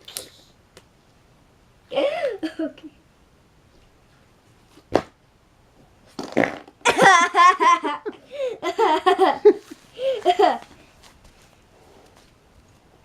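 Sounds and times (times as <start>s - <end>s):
girl laughing: 6.8s - 10.7s.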